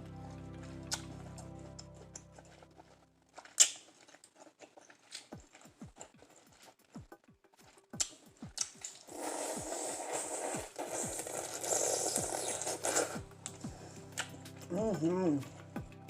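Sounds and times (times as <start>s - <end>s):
held music chord: 0.0s - 3.2s
wet chewing: 0.8s - 15.8s
lip smacks: 3.4s - 14.7s.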